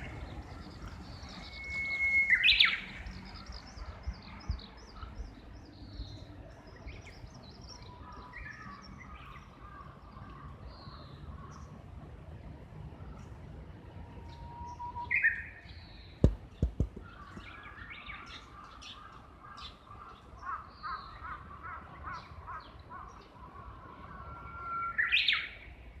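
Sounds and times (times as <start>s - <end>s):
bush warbler singing: 0.0s - 11.8s
small birds chirping faintly: 0.0s - 26.0s
sharp knocks: 16.2s - 17.5s.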